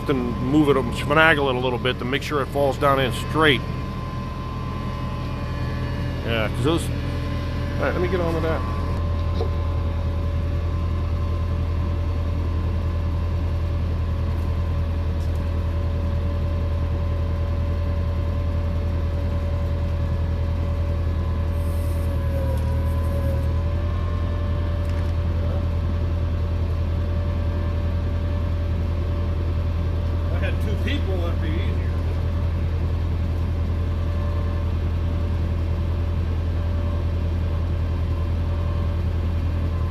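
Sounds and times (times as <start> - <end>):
machine low drone: 0.0 - 39.9
machine whine: 0.0 - 39.9.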